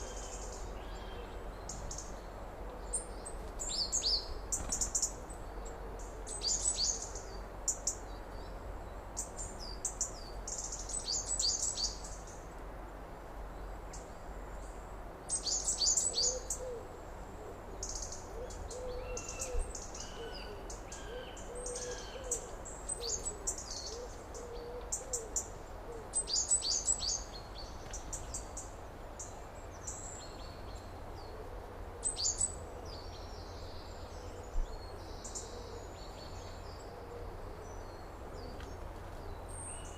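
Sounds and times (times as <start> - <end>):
birds chirping and singing: 17.8 - 25.5.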